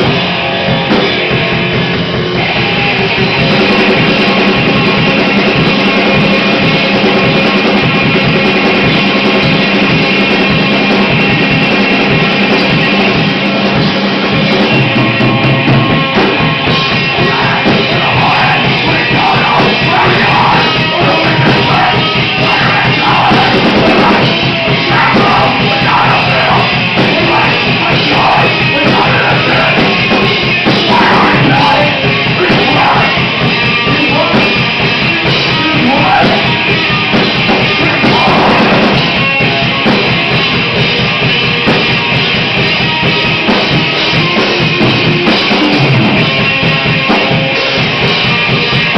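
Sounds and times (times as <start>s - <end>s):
drum kit: 0.0s - 48.9s
heavy guitars: 0.0s - 48.9s
live rock band playing: 0.0s - 48.9s
person shouting vocals: 17.2s - 24.2s, 24.8s - 29.8s, 30.8s - 33.2s.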